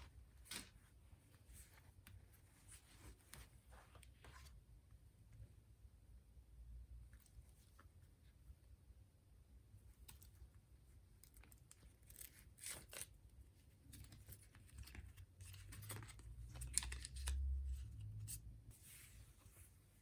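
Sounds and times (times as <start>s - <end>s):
rustles and scrapes: 0.0s - 4.7s, 9.8s - 20.0s.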